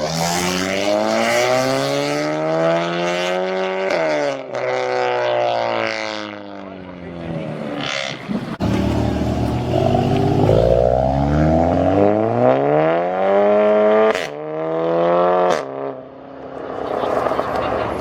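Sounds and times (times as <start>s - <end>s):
car engine accelerating hard: 7.7s - 15.7s
exhaust cracks: 7.8s - 11.2s.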